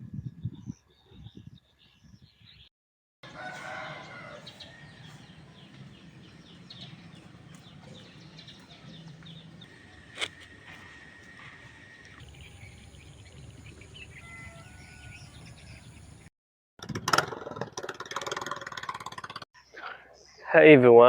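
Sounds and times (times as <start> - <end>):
rooster crowing: 3.2 - 5.6, 14.0 - 15.7
small birds chirping: 3.4 - 16.3.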